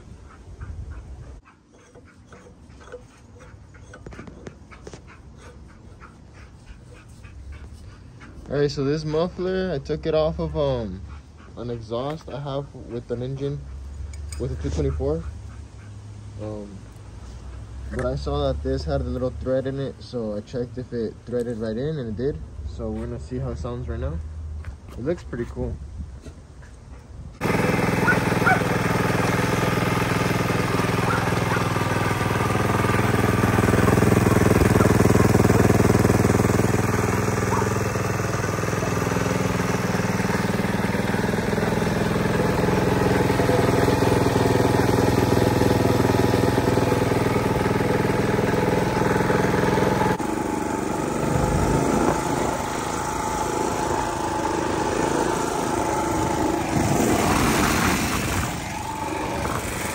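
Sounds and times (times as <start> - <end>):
small gas engine running: 1.4 - 12.6, 27.4 - 59.9.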